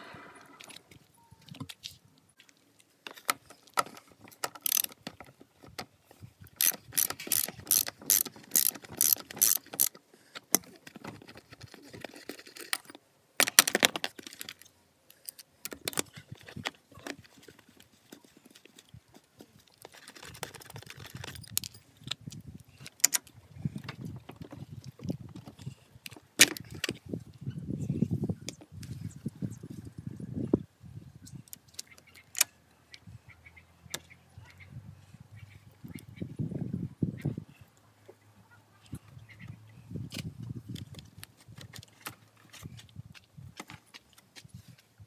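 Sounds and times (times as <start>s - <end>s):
sharp mechanical clicks and rattles: 4.4s - 5.1s, 6.6s - 10.6s.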